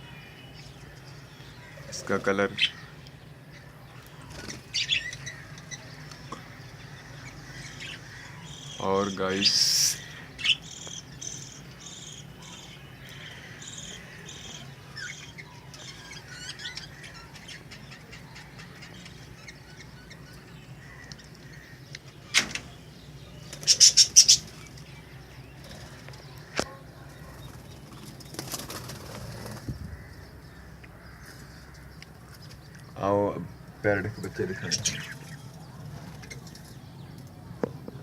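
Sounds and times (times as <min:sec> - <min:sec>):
birds rustling: 0:00.5 - 0:38.0
budgerigars chirping: 0:03.5 - 0:22.3, 0:23.0 - 0:26.0, 0:28.3 - 0:35.5
wing flapping: 0:27.4 - 0:29.8.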